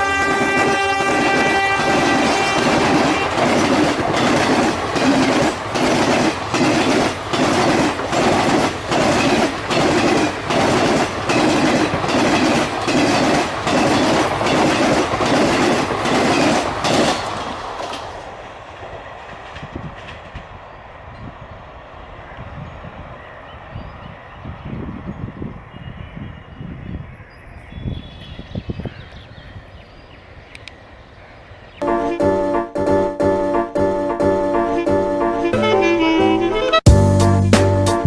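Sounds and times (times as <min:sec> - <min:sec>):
train horn: 0:00.0 - 0:03.6, 0:31.8 - 0:37.0
faint train rumble: 0:00.0 - 0:26.6
train wheels clattering on rails: 0:00.3 - 0:21.4.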